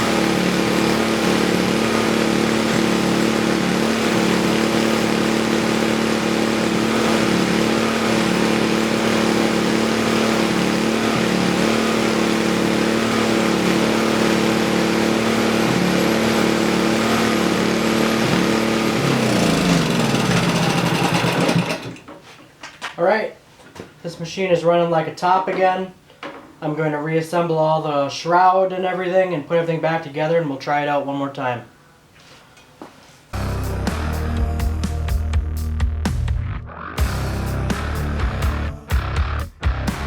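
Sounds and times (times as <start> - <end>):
engine winding down: 0.0 - 22.0, 33.4 - 40.0
small gas engine running: 0.0 - 22.0.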